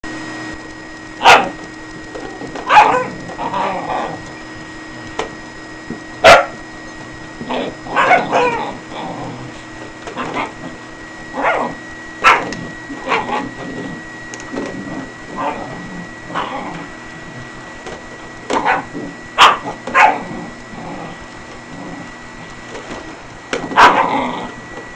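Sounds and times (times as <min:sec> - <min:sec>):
vacuum cleaner humming: 0:00.0 - 0:24.9
dogs barking: 0:01.2 - 0:01.6, 0:02.6 - 0:04.2, 0:06.2 - 0:06.6, 0:07.5 - 0:08.8, 0:11.4 - 0:13.6, 0:18.5 - 0:20.6, 0:23.6 - 0:24.5.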